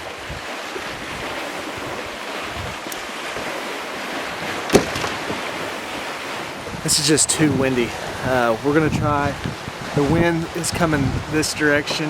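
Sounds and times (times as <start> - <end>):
wind buffeting microphone: 0.0 - 12.0
sharp knock: 4.7 - 5.4.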